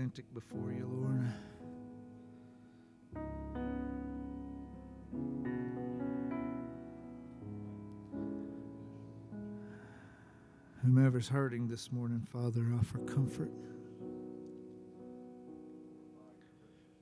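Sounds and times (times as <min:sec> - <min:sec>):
slow keyboard chords: 0:00.0 - 0:11.2, 0:12.7 - 0:17.0.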